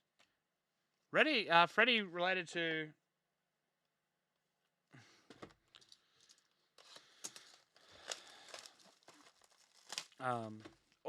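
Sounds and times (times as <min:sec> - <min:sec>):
cards and wrappers rustling: 0:05.4 - 0:11.0.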